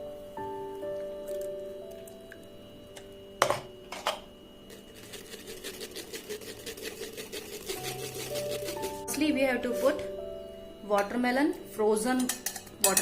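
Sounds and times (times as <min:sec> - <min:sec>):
soft background music: 0:00.0 - 0:13.0
spoon scraping a strainer: 0:04.7 - 0:10.0
spoon knocking: 0:12.2 - 0:13.0.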